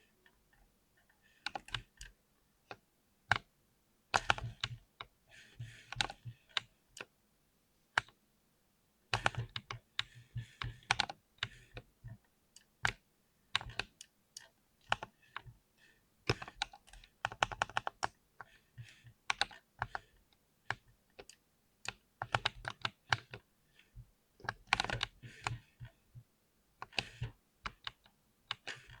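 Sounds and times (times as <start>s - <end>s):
mechanical keyboard typing: 16.3s - 18.1s, 21.9s - 23.4s.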